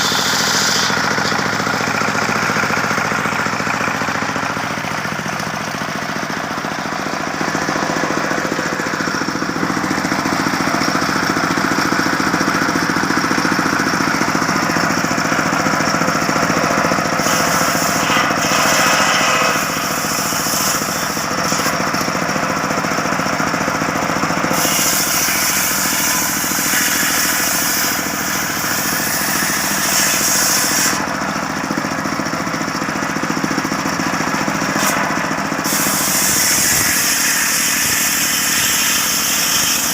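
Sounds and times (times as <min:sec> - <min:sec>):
saw blade hissing cutting log: 0:00.0 - 0:02.6, 0:16.9 - 0:22.0, 0:24.4 - 0:31.1, 0:34.6 - 0:39.9
sawmill drive hum: 0:00.0 - 0:39.9.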